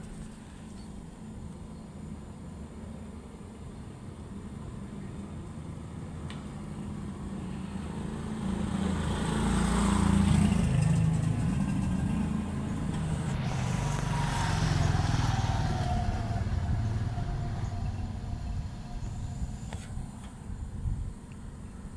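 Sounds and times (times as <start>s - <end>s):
low motor rumble: 10.4s - 21.9s.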